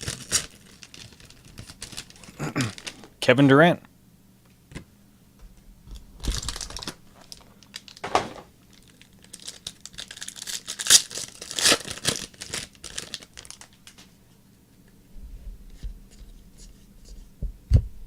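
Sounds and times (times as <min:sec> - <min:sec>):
plastic wrapper crinkling and tearing: 0:00.0 - 0:03.2, 0:06.2 - 0:14.1.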